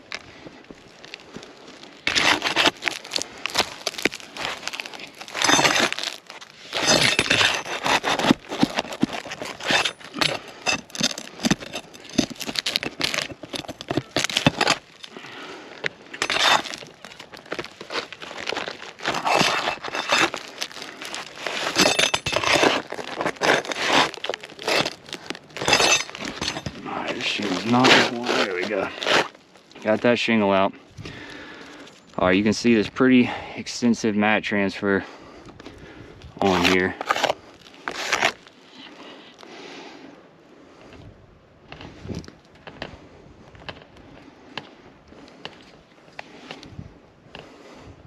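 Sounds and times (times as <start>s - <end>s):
roof shingles scraping and crackling: 0.7s - 30.4s, 36.4s - 39.5s.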